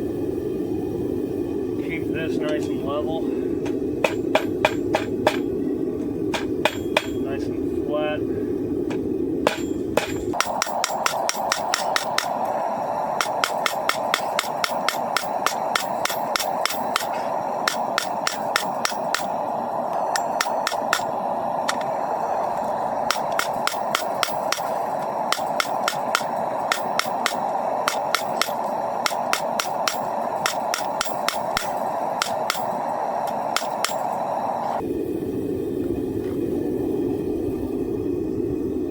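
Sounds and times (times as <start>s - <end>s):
constant rushing noise: 0.0s - 36.6s
hammer striking steel on anvil: 4.0s - 5.5s, 6.3s - 7.3s, 9.5s - 12.5s, 13.2s - 21.9s, 23.0s - 34.3s.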